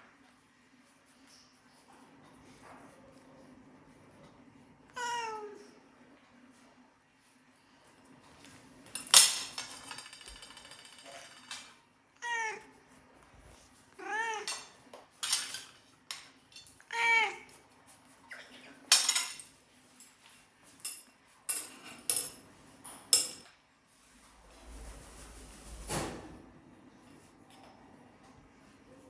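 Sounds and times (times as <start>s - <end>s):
spoon clinking against dish: 20.8s - 22.4s, 23.2s - 23.5s.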